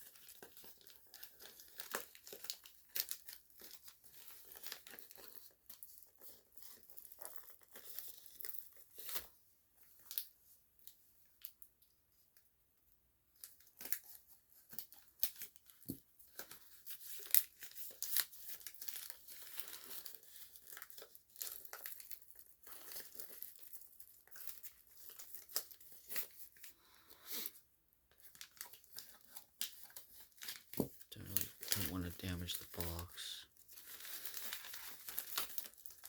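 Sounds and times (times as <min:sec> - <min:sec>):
packaging tearing and crinkling: 0:00.2 - 0:05.6, 0:13.5 - 0:26.4, 0:33.6 - 0:36.0.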